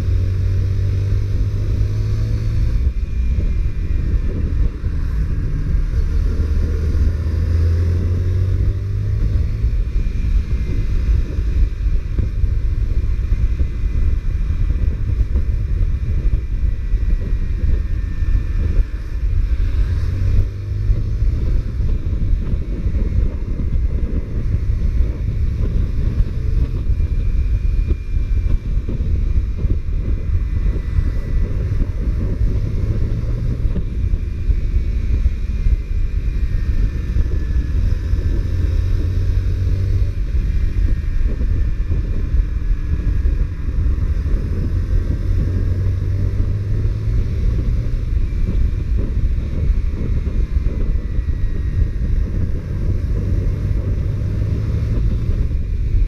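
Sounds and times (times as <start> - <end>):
motorcycle engine running: 0.0 - 56.0
wind buffeting microphone: 0.0 - 56.0.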